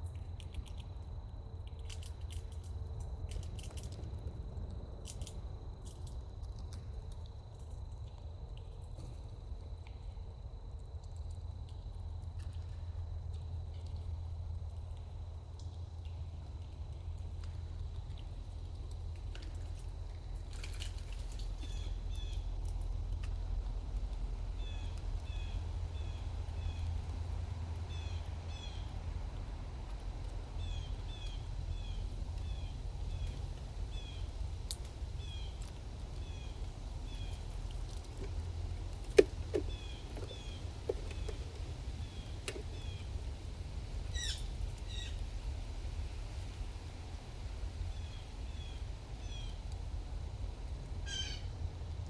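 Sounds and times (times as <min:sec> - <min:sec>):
small bird chirping: 0:21.4 - 0:22.8, 0:24.6 - 0:26.9, 0:27.9 - 0:29.0, 0:30.6 - 0:34.3, 0:35.2 - 0:38.4, 0:39.6 - 0:43.1, 0:44.1 - 0:45.2, 0:51.1 - 0:51.5.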